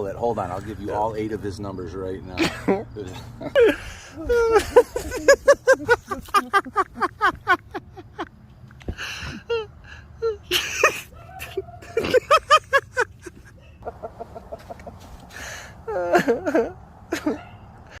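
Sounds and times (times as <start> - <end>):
breathy bursts: 15.3 - 15.9.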